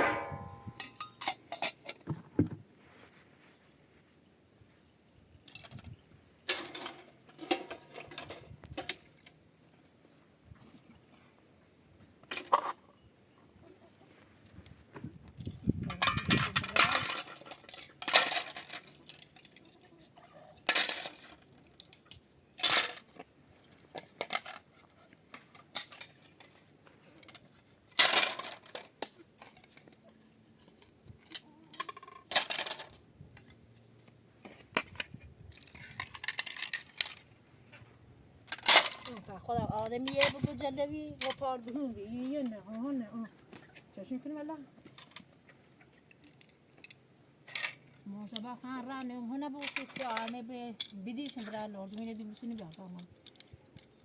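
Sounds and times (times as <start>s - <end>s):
hard objects clinking and clattering: 15.8s - 33.0s.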